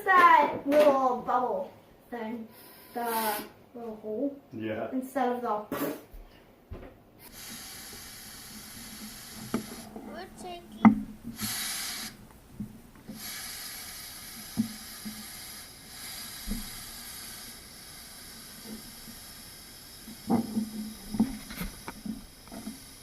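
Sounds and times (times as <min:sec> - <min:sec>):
air blown into slime bubble: 0:07.2 - 0:10.2, 0:11.2 - 0:12.2, 0:13.1 - 0:23.0.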